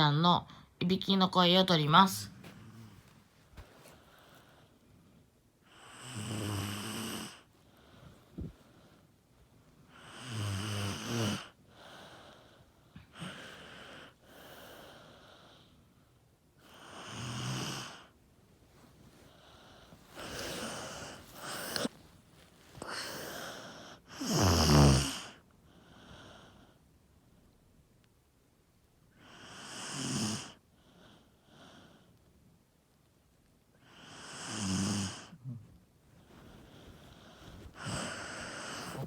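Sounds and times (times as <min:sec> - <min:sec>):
quiet breaths: 0:02.3 - 0:27.9, 0:29.0 - 0:39.0
child snoring: 0:05.8 - 0:07.5, 0:10.0 - 0:11.6, 0:16.8 - 0:18.1, 0:20.2 - 0:21.9, 0:22.8 - 0:25.4, 0:29.2 - 0:30.6, 0:33.9 - 0:35.6, 0:37.6 - 0:39.0.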